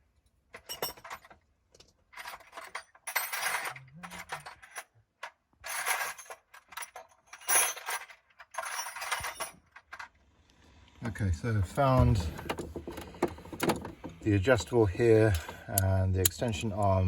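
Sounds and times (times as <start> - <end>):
metal hand tools clinking: 2.2 - 4.9, 15.1 - 17.0.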